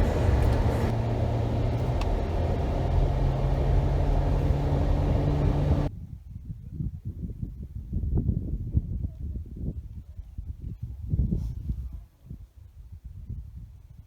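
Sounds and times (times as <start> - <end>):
low hum shifting pitch: 0.0 - 5.9
vehicle engine rumbling: 0.0 - 5.9.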